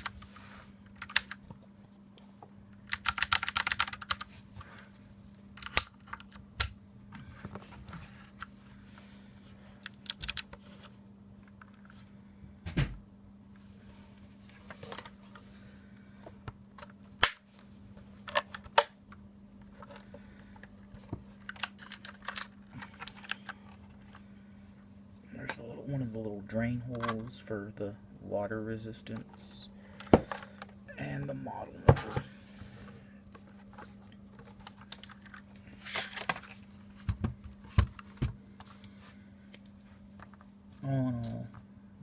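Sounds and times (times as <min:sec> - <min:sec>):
mechanical keyboard keystrokes: 0:01.0 - 0:01.4, 0:02.8 - 0:04.3, 0:09.9 - 0:10.4.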